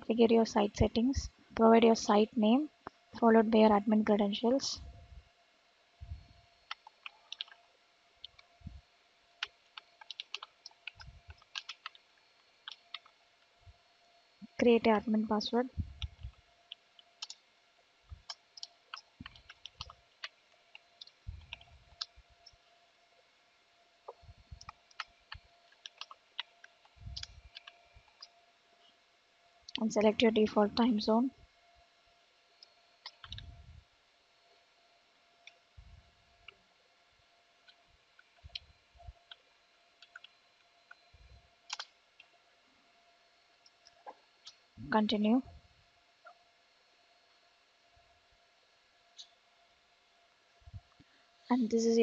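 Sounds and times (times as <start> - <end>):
computer mouse clicks: 6.7 - 7.6, 9.4 - 13.2, 15.9 - 17.4, 18.1 - 22.6, 24.1 - 28.3, 33.0 - 33.5, 40.0 - 41.0, 41.7 - 42.3
keyboard typing: 6.7 - 7.6, 9.4 - 13.2, 15.9 - 17.4, 18.1 - 22.6, 24.1 - 28.3, 33.0 - 33.5, 40.0 - 40.3, 41.7 - 42.3
soft low thumps: 15.7 - 16.4.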